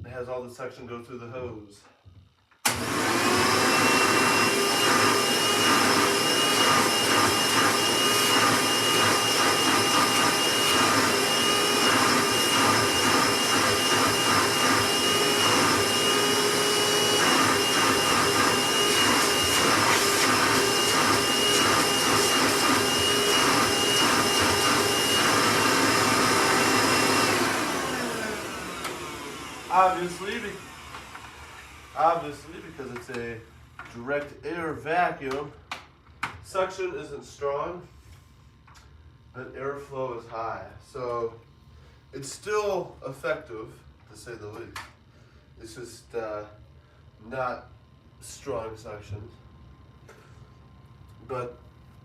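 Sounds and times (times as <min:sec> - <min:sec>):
vacuum cleaner motor whining: 0:02.6 - 0:33.9.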